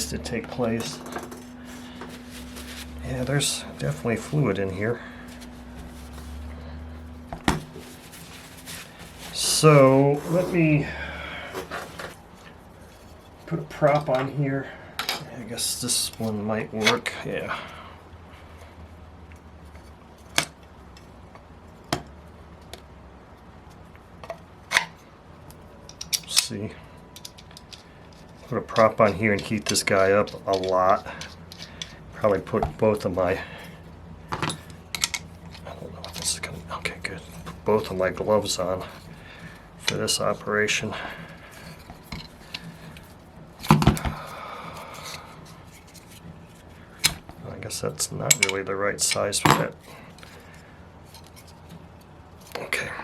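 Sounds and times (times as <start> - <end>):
tools handled on workbench: 0.0 - 6.5, 49.4 - 50.4.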